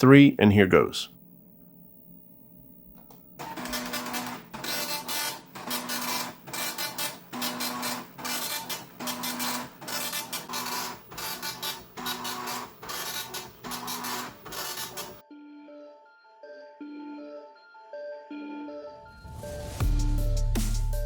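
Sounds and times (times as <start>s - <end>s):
dot matrix printer printing: 3.4s - 15.2s.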